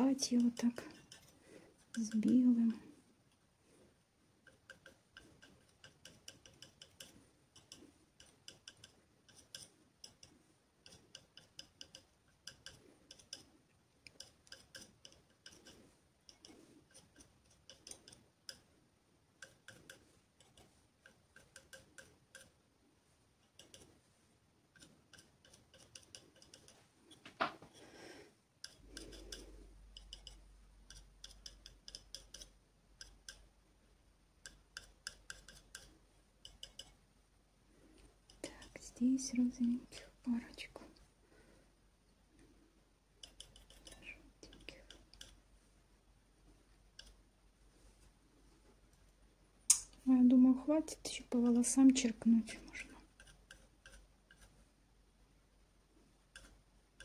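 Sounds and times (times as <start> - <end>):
sharp click: 49.7 - 50.0.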